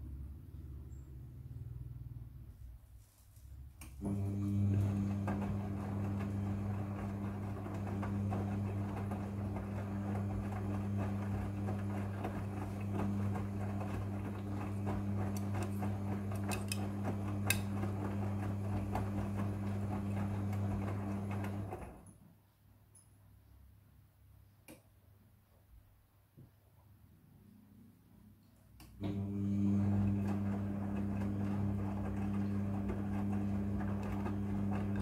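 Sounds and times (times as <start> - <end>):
washing machine motor hum: 3.8 - 22.1, 28.9 - 35.0
wet laundry tumbling: 4.0 - 22.0, 29.1 - 35.0.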